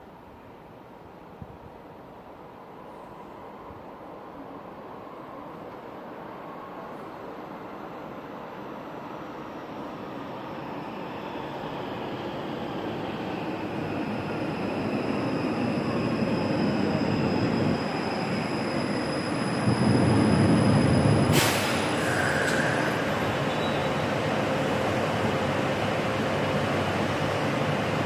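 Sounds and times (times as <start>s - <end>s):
light-rail train running: 0.0s - 28.0s
high wheel squeal: 14.0s - 24.1s
short hiss: 21.3s - 22.8s.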